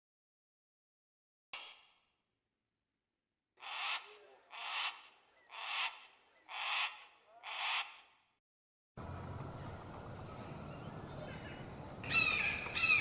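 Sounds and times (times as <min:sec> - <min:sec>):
hawk screaming: 0:03.6 - 0:08.0.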